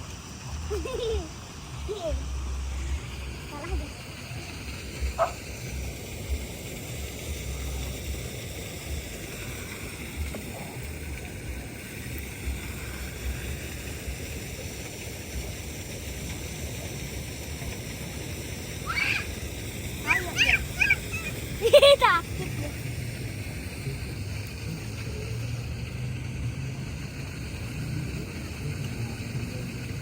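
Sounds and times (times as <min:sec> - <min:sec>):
sea water washing on beach: 0:00.0 - 0:30.0.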